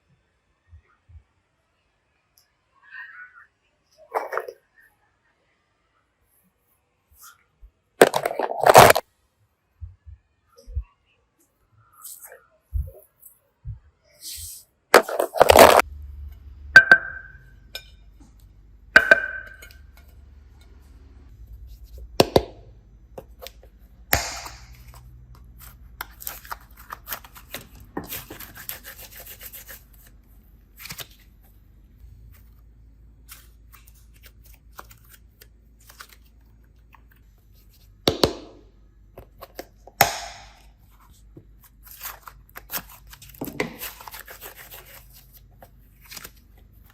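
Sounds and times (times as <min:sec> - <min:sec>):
small objects clicking and knocking: 0:08.0 - 0:09.0, 0:15.0 - 0:15.9
ringing tap tone: 0:16.8 - 0:17.4.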